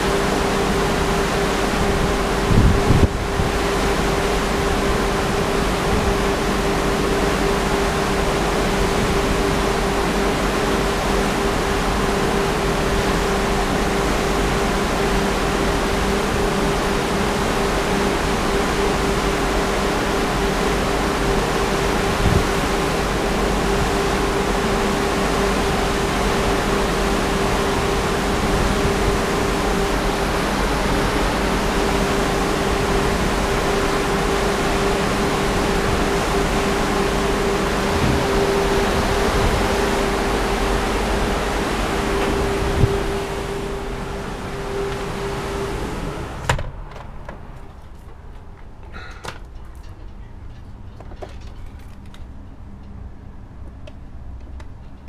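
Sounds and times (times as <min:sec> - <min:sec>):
steady low hum: 0:00.0 - 0:55.0
strong wind rushing: 0:01.8 - 0:03.7, 0:35.7 - 0:46.5.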